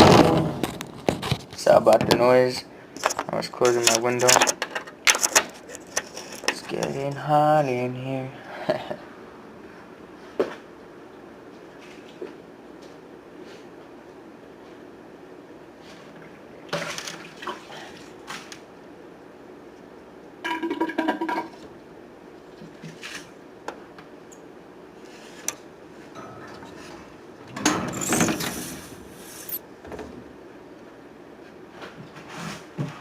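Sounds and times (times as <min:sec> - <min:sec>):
squeaky scrape: 0:27.9 - 0:29.6.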